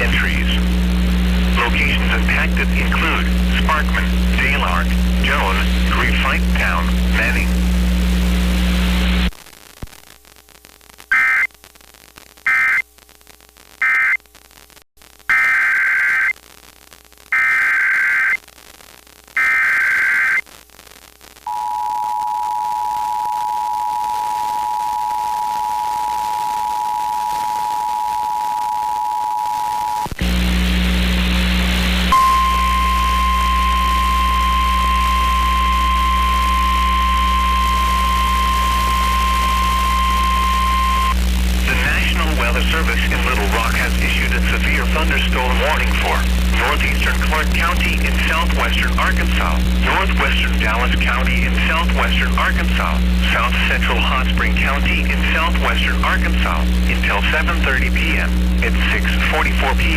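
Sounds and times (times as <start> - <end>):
radio static with hum: 0.0 - 59.9
warning alarm tone: 21.5 - 30.0, 32.1 - 42.0
two-tone attention signal: 32.1 - 41.1
digital data bursts: 32.1 - 54.2.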